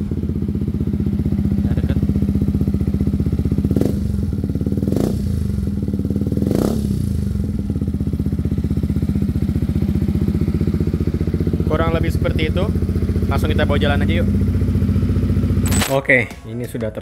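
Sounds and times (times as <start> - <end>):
motorcycle engine idling: 0.0 - 15.8
engine revving: 3.6 - 7.7, 11.6 - 15.8.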